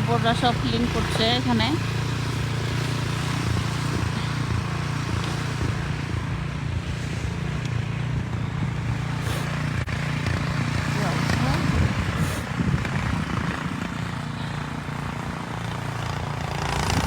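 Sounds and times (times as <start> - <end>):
engine droning: 0.0 - 17.0
hiss: 9.2 - 9.6.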